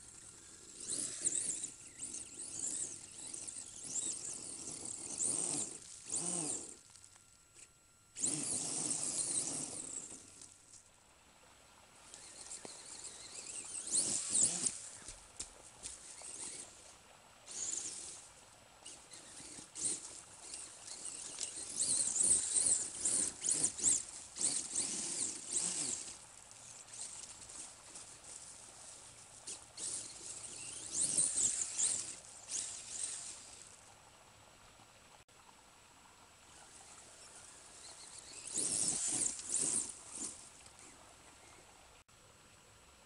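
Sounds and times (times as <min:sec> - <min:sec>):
tyres scrabbling on dirt: 0:00.0 - 0:07.2, 0:12.2 - 0:16.9, 0:17.5 - 0:33.8, 0:36.6 - 0:40.9
electric motor whine: 0:00.0 - 0:10.9, 0:12.0 - 0:16.9, 0:17.5 - 0:33.8, 0:36.6 - 0:41.6.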